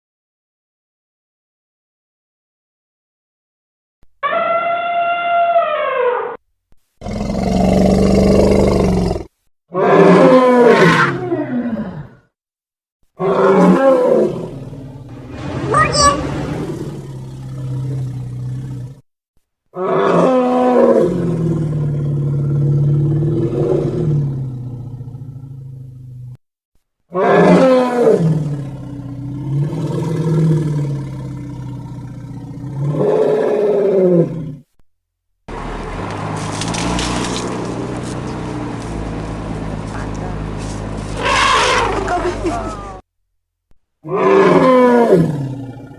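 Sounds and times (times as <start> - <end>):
animal roars: 7.0 - 12.3, 13.2 - 19.0, 19.8 - 26.4, 27.1 - 34.7, 41.2 - 43.0, 44.0 - 45.9
large animal low call: 15.2 - 19.0.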